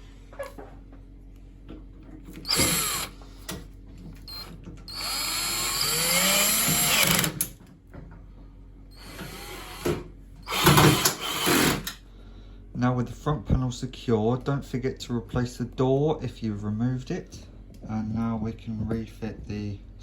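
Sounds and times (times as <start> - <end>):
cordless screwdriver motor whine: 2.4 - 3.2, 4.3 - 7.4, 9.0 - 11.9.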